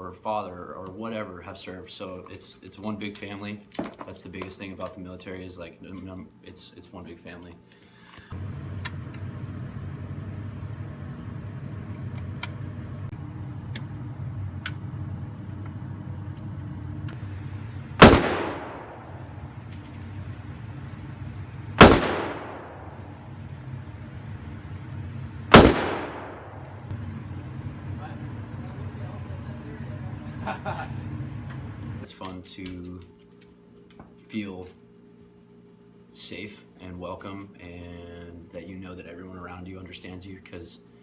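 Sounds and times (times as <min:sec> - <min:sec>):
steady low hum: 0:00.0 - 0:41.0
gunshots with reverberant tail: 0:18.0 - 0:19.3, 0:21.8 - 0:23.1, 0:25.5 - 0:26.8.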